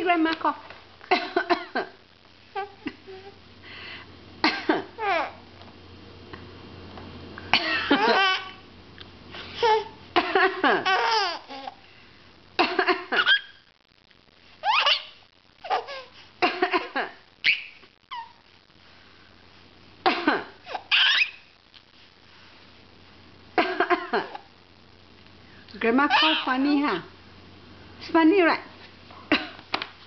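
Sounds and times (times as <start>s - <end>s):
woman play coughing: 1.1s - 1.8s, 4.4s - 4.9s, 7.6s - 8.0s, 20.0s - 20.5s
baby laughing: 4.8s - 5.4s, 7.6s - 8.6s, 9.6s - 10.0s, 10.6s - 11.8s, 13.0s - 13.6s, 14.6s - 18.4s, 20.6s - 21.4s, 26.1s - 26.5s.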